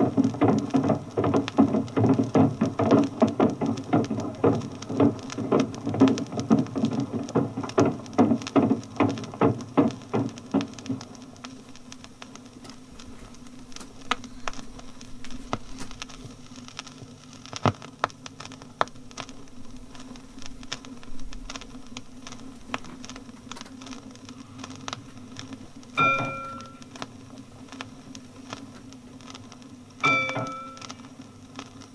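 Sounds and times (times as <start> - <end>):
sharp clicks and knocks: 0.0 - 27.1, 27.7 - 31.8
bell ding: 26.0 - 26.8, 30.0 - 30.9.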